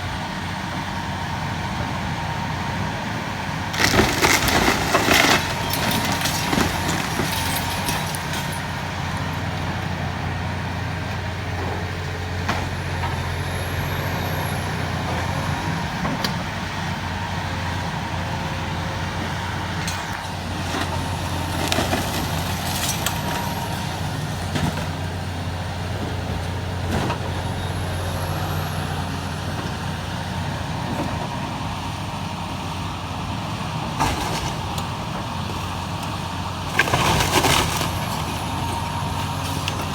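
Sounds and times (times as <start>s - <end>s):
diesel engine running: 0.0s - 39.9s
debris knocks and cracks: 3.7s - 8.9s, 19.8s - 25.1s, 33.9s - 39.9s.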